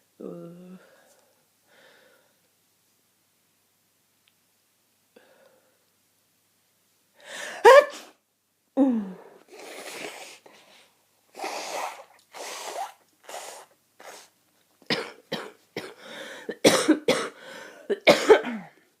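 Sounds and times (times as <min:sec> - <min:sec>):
person coughing: 0:07.5 - 0:08.1, 0:14.9 - 0:18.8
noisy breaths: 0:16.0 - 0:16.5.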